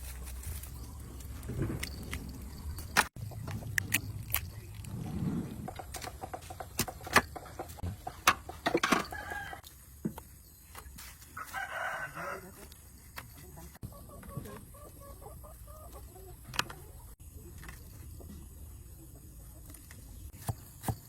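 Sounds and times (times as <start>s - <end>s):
sharp clicks and knocks: 5.6s - 9.1s
rooster crowing: 9.0s - 9.6s, 11.4s - 12.6s
chickens clucking: 13.8s - 17.2s.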